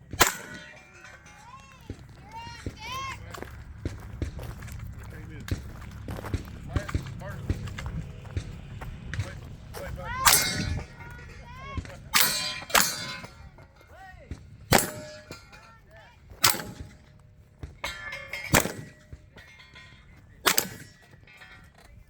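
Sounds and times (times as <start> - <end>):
shotgun shots: 0.0 - 0.8, 10.2 - 11.0, 11.8 - 13.4, 14.7 - 15.5, 16.4 - 17.1, 17.8 - 19.1, 20.4 - 21.1
steel targets ringing: 0.0 - 3.6, 9.1 - 22.0.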